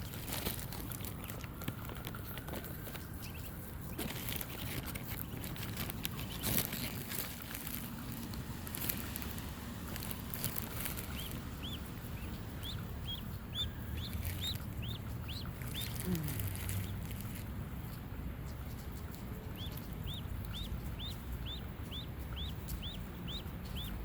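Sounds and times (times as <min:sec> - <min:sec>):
ducklings peeping: 0:00.0 - 0:24.0
rain taps: 0:00.0 - 0:24.0
rain hissing: 0:06.9 - 0:13.1.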